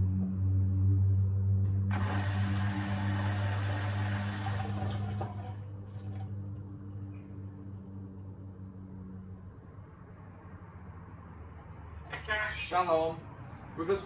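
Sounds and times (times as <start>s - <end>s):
drain pump humming: 1.9s - 6.6s.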